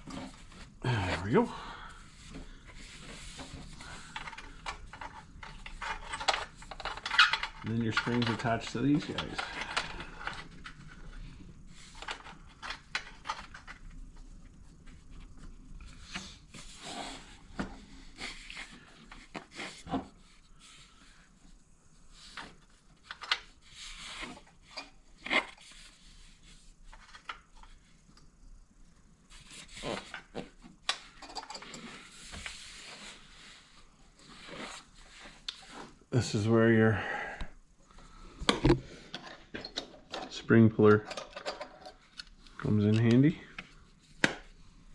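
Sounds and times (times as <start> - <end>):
metal parts clicking and scraping: 4.0 - 11.0, 30.9 - 32.1, 39.1 - 43.1.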